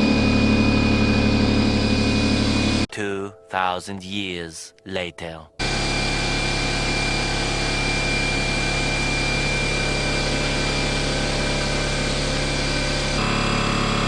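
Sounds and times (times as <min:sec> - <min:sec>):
air compressor running: 0:00.0 - 0:02.9, 0:05.6 - 0:14.0.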